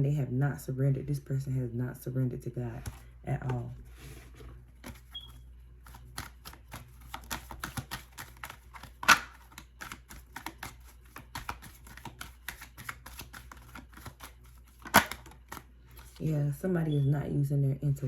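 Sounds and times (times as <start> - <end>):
cards being shuffled: 2.8 - 16.2.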